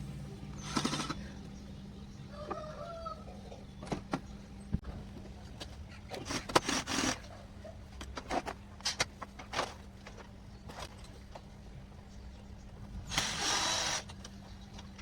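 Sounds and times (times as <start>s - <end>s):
steady low hum: 0.0s - 6.2s.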